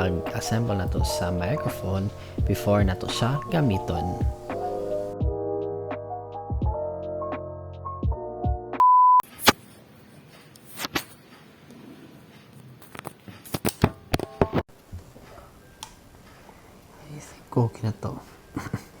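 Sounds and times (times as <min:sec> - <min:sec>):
short steady beep: 0:08.8 - 0:09.2.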